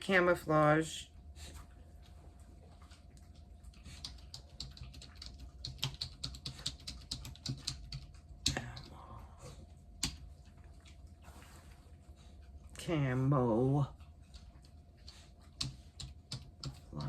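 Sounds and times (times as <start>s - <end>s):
loud keyboard clacks: 4.0s - 8.6s.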